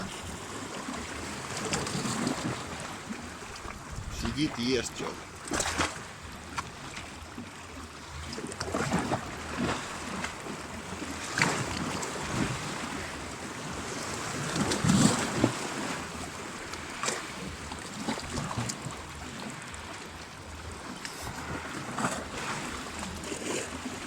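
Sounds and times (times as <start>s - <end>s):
wind buffeting microphone: 0.0s - 5.7s
waves splashing on rocks: 0.0s - 24.0s.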